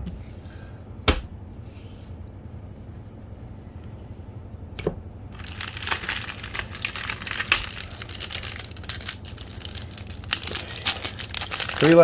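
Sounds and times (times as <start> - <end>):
plastic wrapper crinkling: 5.3 - 12.0.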